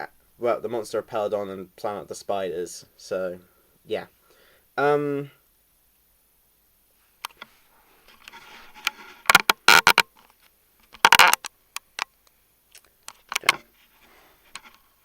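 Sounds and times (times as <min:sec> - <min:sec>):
rustling scrapes: 0:07.0 - 0:10.4, 0:13.4 - 0:15.0.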